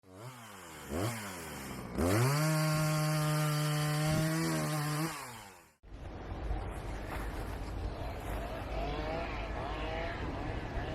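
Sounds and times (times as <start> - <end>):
chainsaw revving: 0.0 - 5.8, 8.6 - 10.9
low rumbling noise: 5.8 - 10.9.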